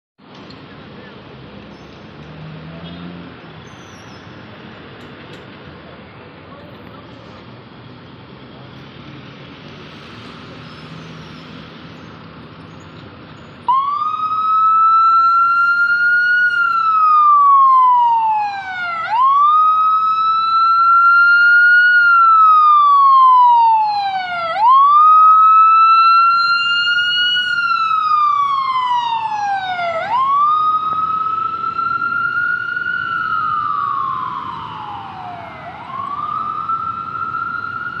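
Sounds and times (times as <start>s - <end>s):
light traffic noise: 0.2s - 38.0s
ambulance siren wailing: 13.6s - 38.0s.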